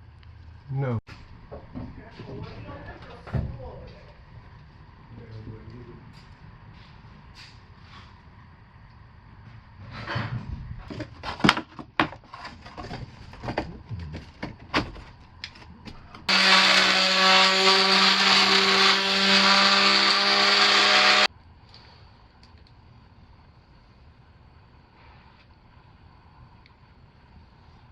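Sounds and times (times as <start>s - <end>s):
electric power tool running: 16.3s - 21.3s.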